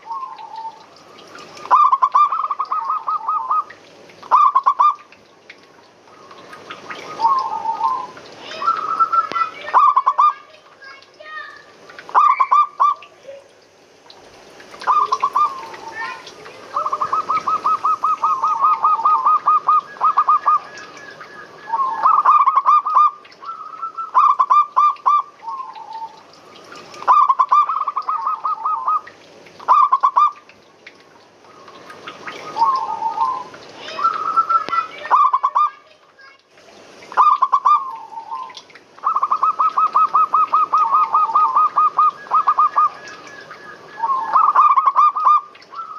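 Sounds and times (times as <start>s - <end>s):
dove stuttering coos: 14.8s - 26.1s, 37.2s - 43.1s.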